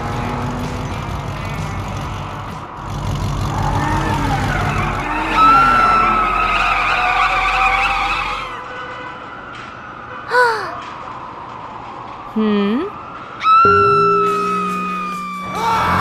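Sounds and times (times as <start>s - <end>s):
cartoon engine rumble: 0.0s - 8.5s, 13.5s - 16.0s
tyres squealing: 0.0s - 8.6s.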